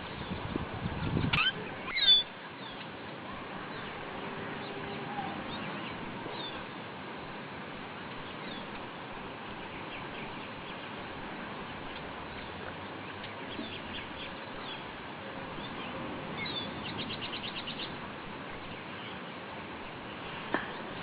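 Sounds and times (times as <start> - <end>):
small birds chirping: 0.0 - 6.8, 9.5 - 21.0.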